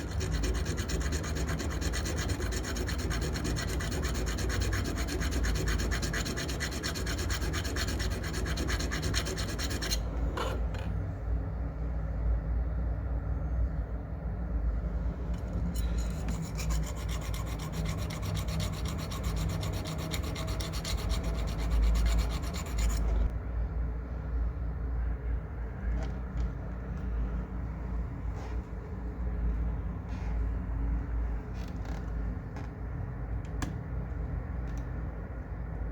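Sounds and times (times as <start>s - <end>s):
metal clasp being filed: 0.0s - 10.9s, 15.4s - 23.3s
steady low hum: 0.0s - 35.9s.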